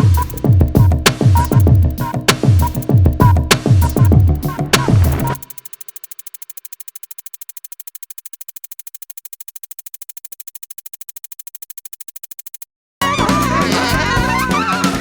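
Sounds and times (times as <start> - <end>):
fast synthesizer pulse: 0.0 - 12.6
full band music: 13.0 - 15.0.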